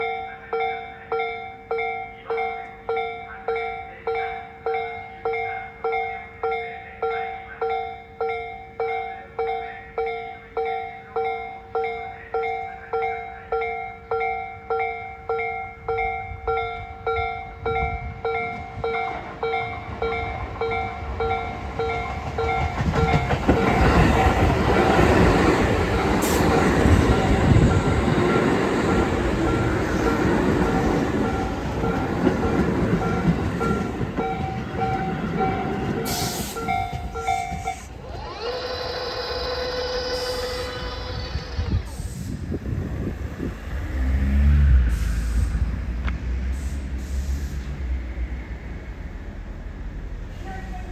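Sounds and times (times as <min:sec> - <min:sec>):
level-crossing warning bell: 0:00.0 - 0:42.1
electric train rumbling past: 0:13.5 - 0:50.9
air hiss: 0:36.0 - 0:38.0, 0:39.8 - 0:43.0, 0:44.8 - 0:47.9.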